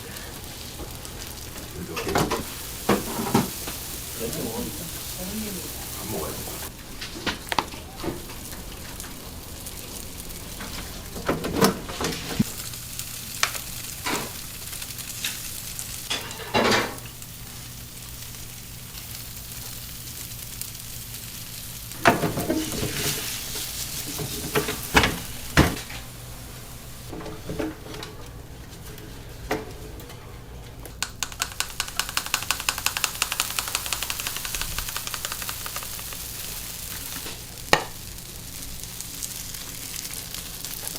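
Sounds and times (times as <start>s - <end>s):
batter sizzling in iron molds: 0.0s - 40.9s
fast clicking: 31.0s - 36.8s.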